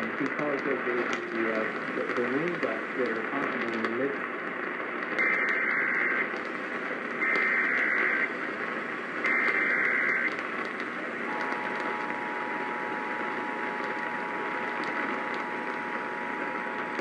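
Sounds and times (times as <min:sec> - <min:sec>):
radio hiss: 0:00.0 - 0:17.0.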